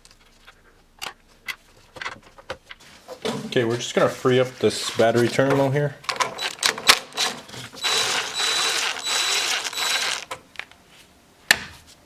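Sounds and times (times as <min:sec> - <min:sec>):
cordless ratchet whirring: 0:06.2 - 0:10.4.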